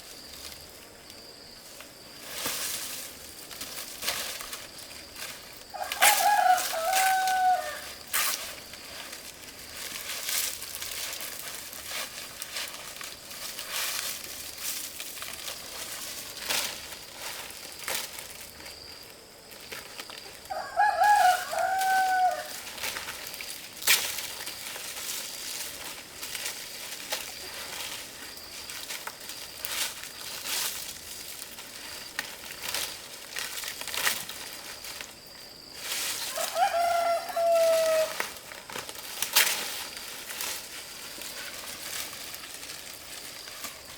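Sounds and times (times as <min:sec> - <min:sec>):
rooster crowing: 0:05.7 - 0:08.0, 0:20.4 - 0:22.6, 0:36.2 - 0:38.3.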